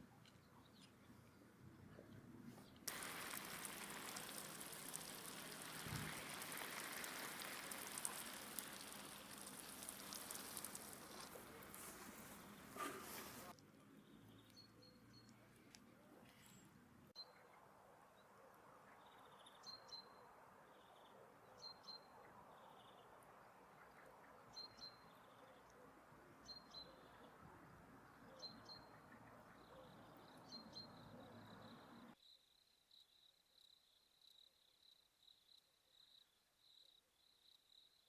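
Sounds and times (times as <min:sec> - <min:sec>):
low hiss: 0:02.9 - 0:13.6.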